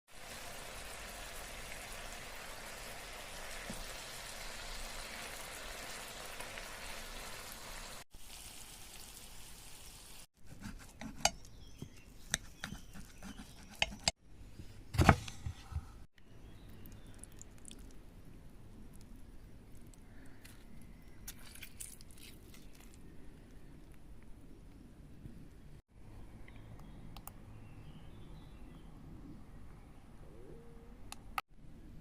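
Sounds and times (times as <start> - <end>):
food sizzling in a frying pan: 0.1 - 10.3.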